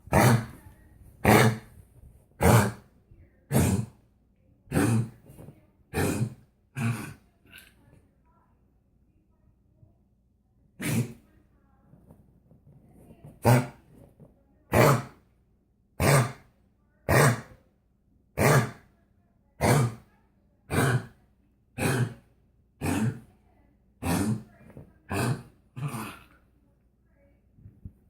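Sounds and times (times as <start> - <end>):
dog hacking cough: 14.7 - 15.2, 16.0 - 16.4, 17.1 - 17.5, 18.4 - 18.8, 19.6 - 20.0, 21.8 - 22.2, 22.8 - 23.3.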